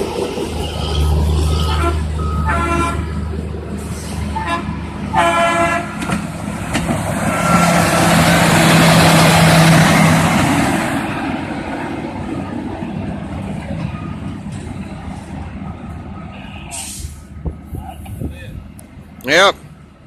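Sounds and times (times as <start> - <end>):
rushing noise of passing machine: 0.0 - 15.5
diesel rail machines droning: 0.0 - 20.0.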